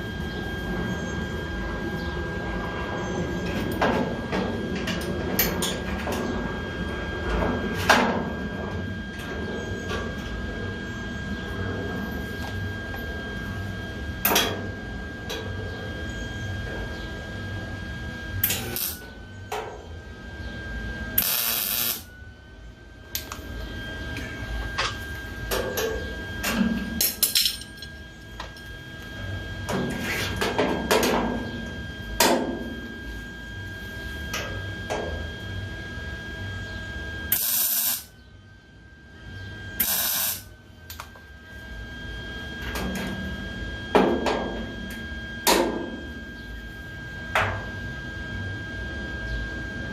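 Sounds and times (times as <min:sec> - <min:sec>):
steady hum: 0:00.0 - 0:49.9
welding bursts: 0:18.5 - 0:19.0, 0:21.2 - 0:22.1, 0:37.3 - 0:38.1, 0:39.8 - 0:40.4.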